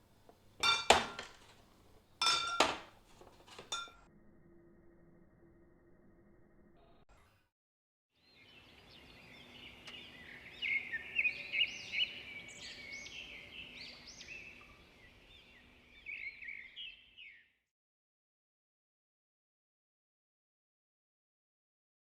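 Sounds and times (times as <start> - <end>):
birds chirping and singing: 8.2 - 17.5.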